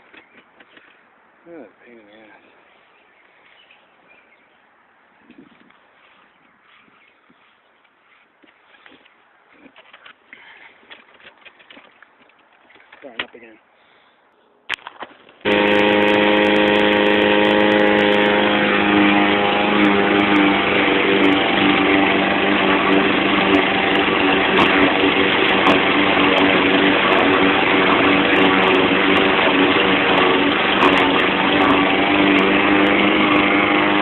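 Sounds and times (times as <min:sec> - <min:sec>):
lawn mower engine running: 0:15.4 - 0:34.0.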